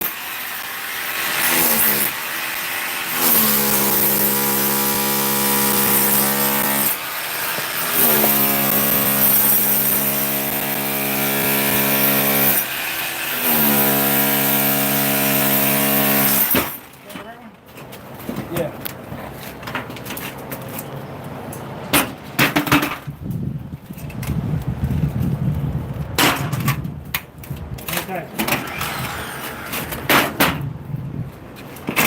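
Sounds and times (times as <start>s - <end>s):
power tool motor humming: 0.0s - 16.8s, 28.5s - 30.1s
rough noise: 27.8s - 32.0s.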